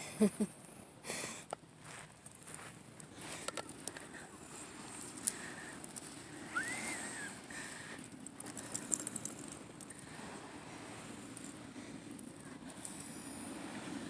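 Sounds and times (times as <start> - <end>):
faint surf: 0.0 - 14.0
footsteps crunching on shells: 1.8 - 4.1.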